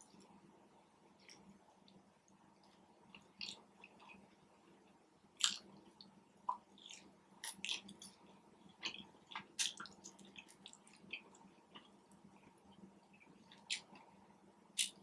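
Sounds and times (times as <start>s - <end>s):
chewing with wet mouth smacks: 5.4s - 12.0s.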